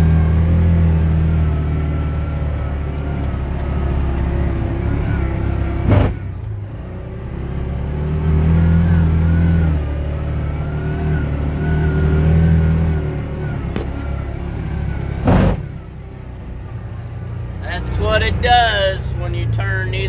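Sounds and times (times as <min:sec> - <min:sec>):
atv engine accelerating: 0:00.0 - 0:20.0
loud thump: 0:05.9 - 0:06.4, 0:13.7 - 0:15.9.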